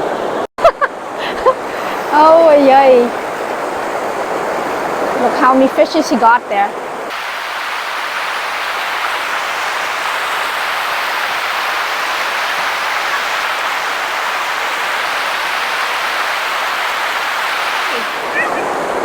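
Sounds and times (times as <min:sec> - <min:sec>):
shallow river water rushing: 0:00.0 - 0:19.0.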